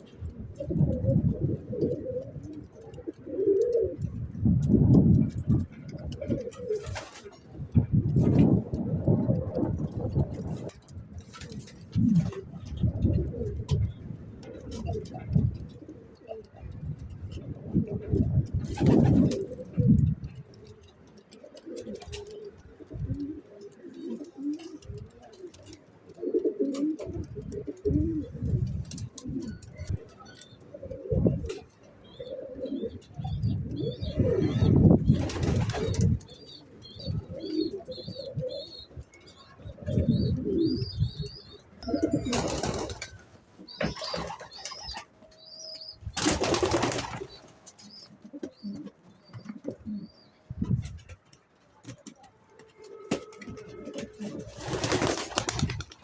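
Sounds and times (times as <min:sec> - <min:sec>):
pigeons cooing: 0:00.0 - 0:51.2, 0:51.8 - 0:56.0
small birds chirping: 0:31.8 - 0:50.7.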